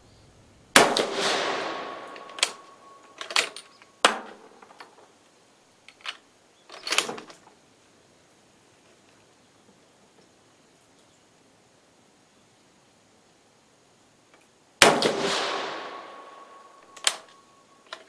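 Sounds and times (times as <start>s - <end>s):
rifle shot echoing: 0.8s - 3.1s, 14.8s - 17.3s
rifle bolt clicks and clacks: 2.1s - 3.7s, 16.8s - 18.0s.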